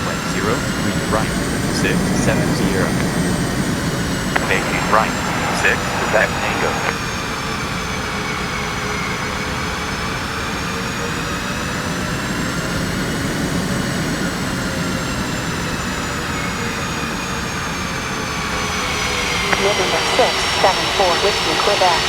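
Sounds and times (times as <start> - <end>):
high turbine whine: 0.0 - 7.1, 18.4 - 22.0
jet engines rushing: 0.0 - 7.1, 18.4 - 22.0.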